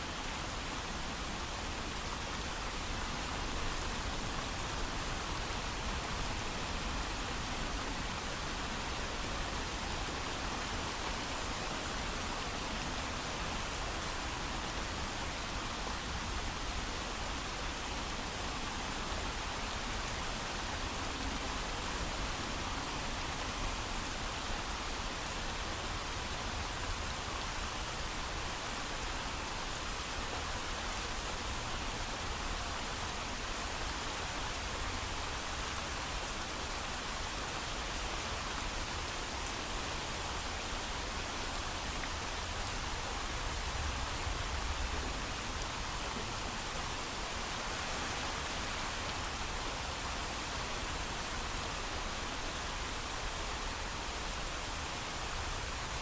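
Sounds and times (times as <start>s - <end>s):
heavy rain falling: 18.2s - 56.0s.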